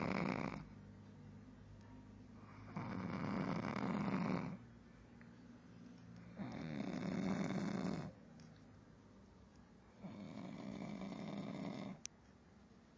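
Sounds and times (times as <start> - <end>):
person snoring: 0.0 - 0.7, 2.5 - 4.6, 6.4 - 8.1, 10.0 - 12.0.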